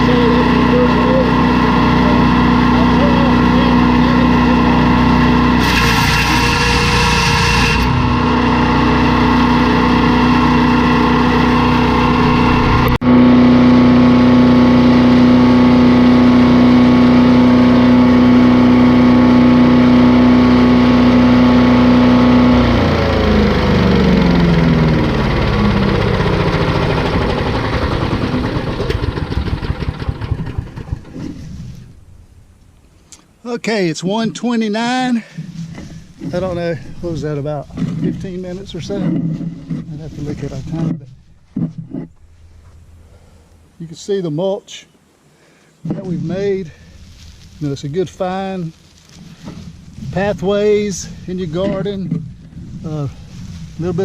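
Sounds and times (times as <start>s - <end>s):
engine winding down: 0.0s - 32.6s
wood chipper engine running: 0.0s - 32.6s, 35.2s - 43.8s, 46.3s - 54.0s.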